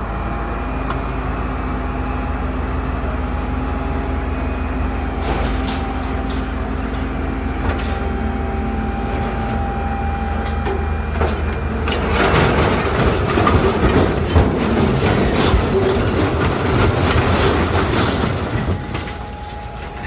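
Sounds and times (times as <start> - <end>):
engine humming: 0.0 - 20.0
rattling clatter: 4.6 - 20.0.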